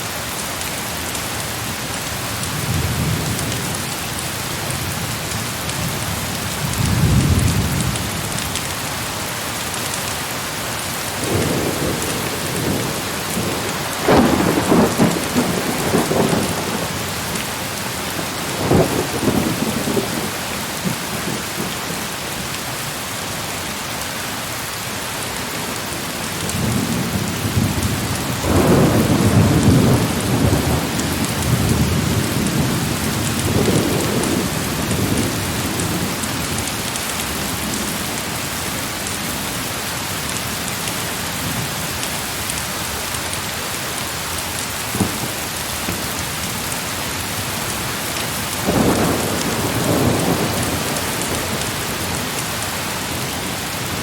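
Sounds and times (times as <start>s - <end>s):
heavy rain pouring: 0.0s - 54.0s
thunder rumbling: 11.2s - 22.0s, 26.4s - 36.2s, 44.8s - 52.4s.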